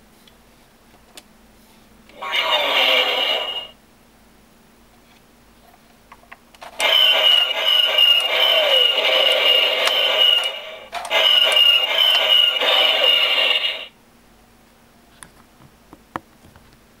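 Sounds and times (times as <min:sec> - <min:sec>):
electronic toy sound effect: 0:02.1 - 0:03.8, 0:06.8 - 0:13.9.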